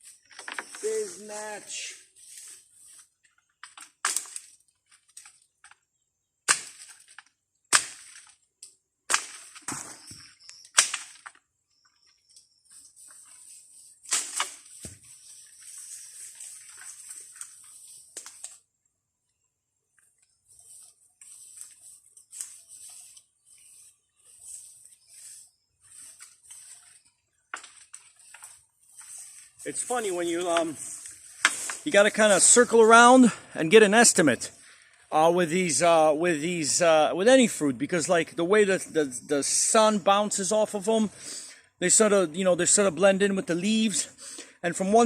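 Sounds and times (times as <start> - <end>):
foliage rustling: 0.0 - 5.6, 12.0 - 18.7, 19.9 - 36.0
stems and twigs snapping: 3.6 - 5.8, 16.4 - 18.6.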